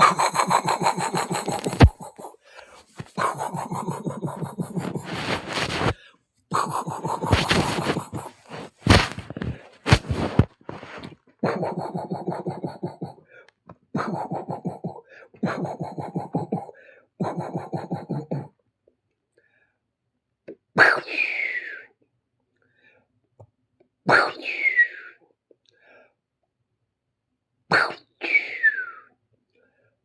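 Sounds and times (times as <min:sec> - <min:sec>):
pulsing vocal rattles: 0:00.0 - 0:02.4, 0:03.0 - 0:05.5, 0:06.5 - 0:10.2, 0:11.4 - 0:13.2, 0:14.0 - 0:16.6
vocal swishing burst: 0:00.0 - 0:02.4, 0:03.0 - 0:13.2.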